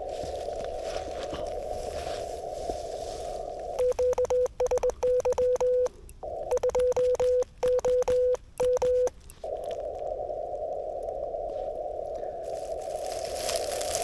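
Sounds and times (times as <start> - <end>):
morse code tone: 3.8 - 9.3.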